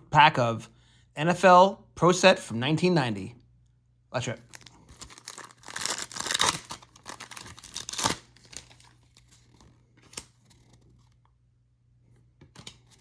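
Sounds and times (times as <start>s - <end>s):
foil wrapper tearing and crinkling: 4.4s - 9.5s.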